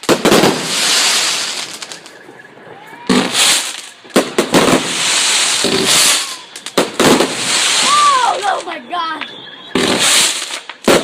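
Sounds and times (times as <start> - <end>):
firework hiss: 0.0 - 2.0, 3.2 - 8.4, 9.8 - 11.0
firework bangs: 0.0 - 11.0
firework crackling: 0.0 - 11.0.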